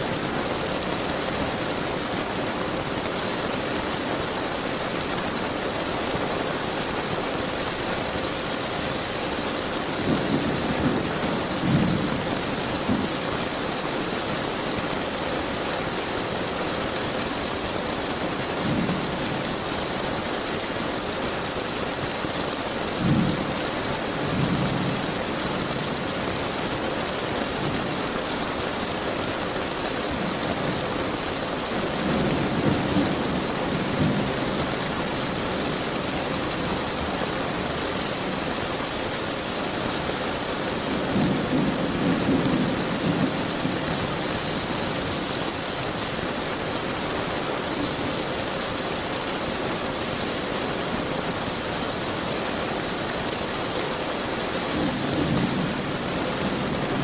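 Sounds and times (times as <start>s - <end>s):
heavy rain hiss: 0.0s - 57.0s
thunder rumbling: 9.8s - 13.2s.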